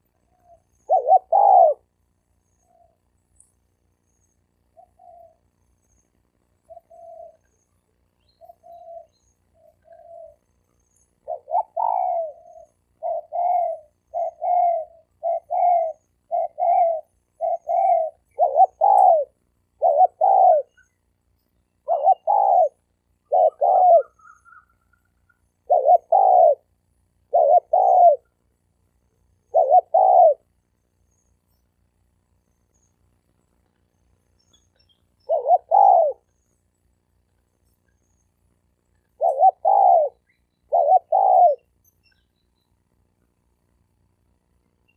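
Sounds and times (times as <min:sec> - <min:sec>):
faint high chirps: 0:00.0 - 0:44.9
doves cooing: 0:00.1 - 0:02.0, 0:04.7 - 0:05.6, 0:06.6 - 0:07.8, 0:08.4 - 0:20.9, 0:21.8 - 0:28.4, 0:29.4 - 0:30.5, 0:35.2 - 0:36.3, 0:39.0 - 0:41.8.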